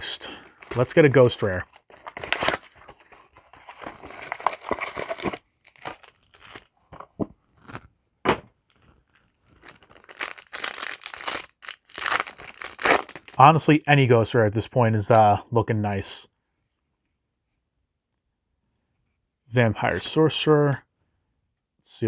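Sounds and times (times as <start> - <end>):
foil wrapper crinkling and tearing: 0.0 - 6.7, 8.7 - 13.4
cards rustling: 0.0 - 7.9, 8.7 - 13.4.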